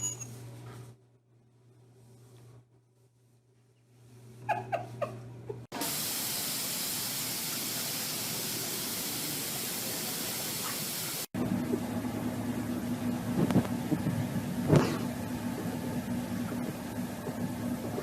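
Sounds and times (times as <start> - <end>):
loud hiss: 5.8 - 11.3.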